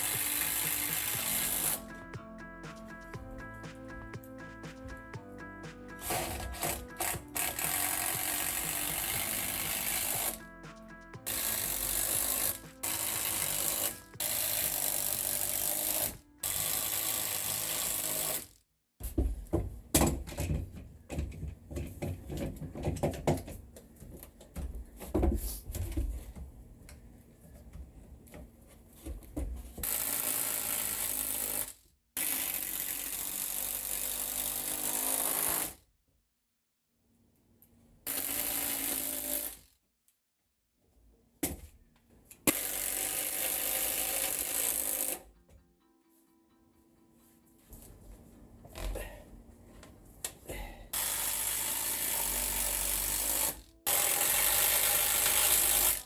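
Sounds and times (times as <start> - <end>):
power driver driving screws: 0.0 - 1.9, 6.0 - 10.4, 11.3 - 18.5, 38.1 - 39.6, 42.5 - 45.2, 51.0 - 56.0
wooden knocks and rattles: 19.2 - 23.6.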